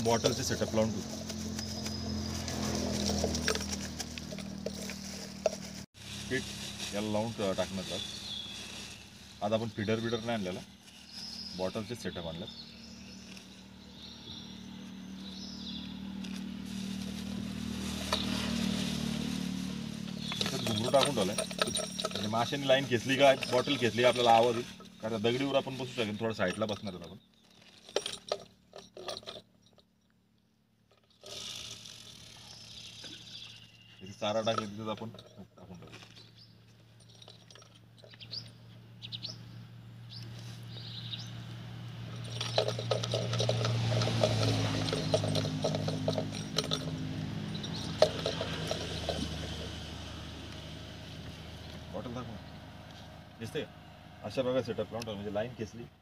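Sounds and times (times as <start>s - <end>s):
bird chirping: 0.0s - 3.1s, 6.6s - 16.6s, 20.0s - 27.6s, 32.2s - 36.8s, 37.9s - 41.6s
motor engine humming: 0.0s - 9.4s, 41.3s - 55.2s
rapid clicking rattle: 42.2s - 49.5s.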